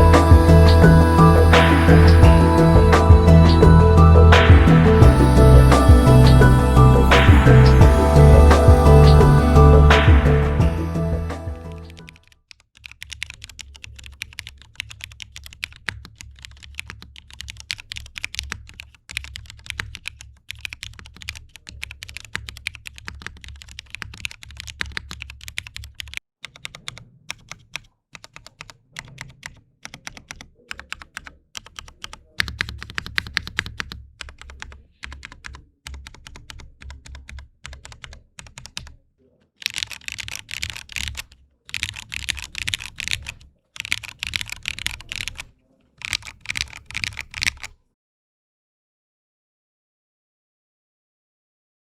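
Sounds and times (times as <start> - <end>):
mechanical keyboard typing: 11.3 - 39.0, 39.6 - 47.8.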